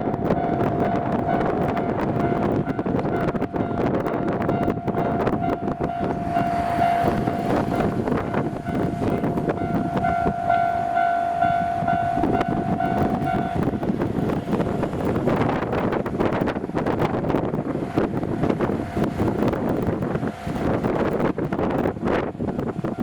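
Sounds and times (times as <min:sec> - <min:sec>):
train passing: 0:00.0 - 0:23.0
level crossing alarm ringing: 0:04.6 - 0:14.3.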